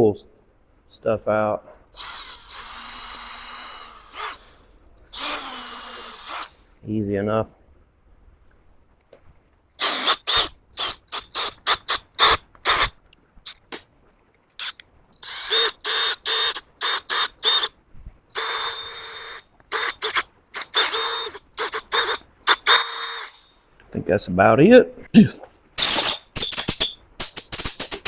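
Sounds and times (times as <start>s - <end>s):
compressed air blow gun blasts: 9.8s - 13.0s, 25.8s - 28.0s.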